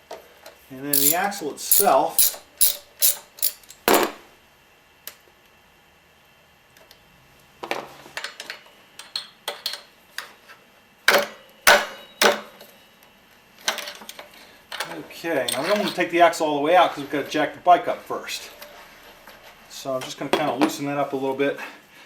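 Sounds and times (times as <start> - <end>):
hand tools clicking and knocking: 1.0 - 3.8.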